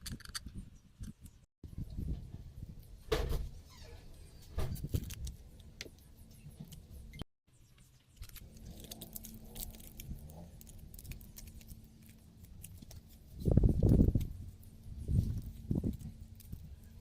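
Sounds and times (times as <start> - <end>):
small objects clicking and rattling: 8.2 - 17.0.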